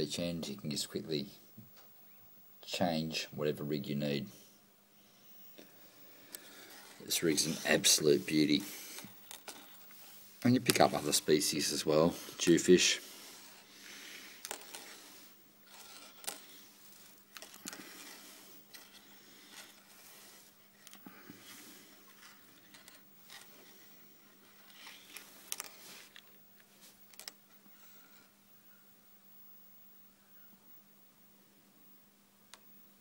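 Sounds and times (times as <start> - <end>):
low electrical hum: 0.0 - 33.0
hands handling fishing line: 5.5 - 27.6.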